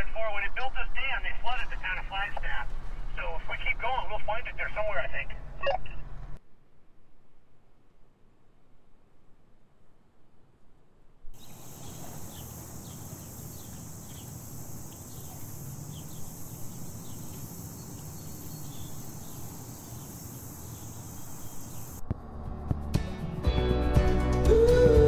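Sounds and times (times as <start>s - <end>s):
high-pitched insect chorus: 11.4s - 22.0s
music: 22.0s - 25.0s.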